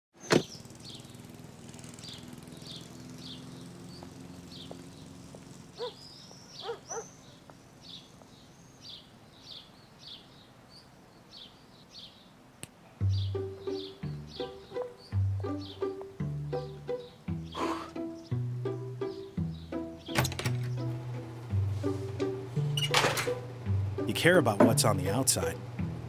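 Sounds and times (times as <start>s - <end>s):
bird chirping: 0.2s - 12.4s, 13.0s - 21.1s.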